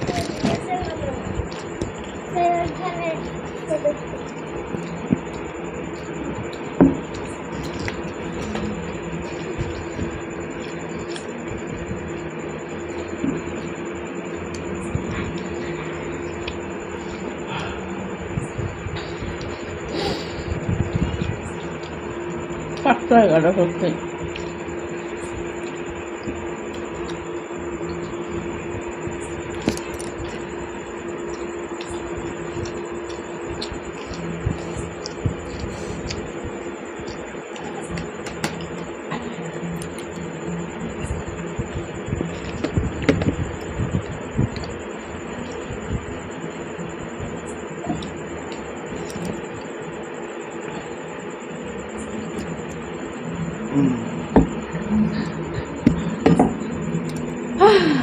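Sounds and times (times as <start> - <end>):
eating rice by hand squishes: 0.0 - 22.8, 24.1 - 46.8
steady hum: 0.0 - 58.0.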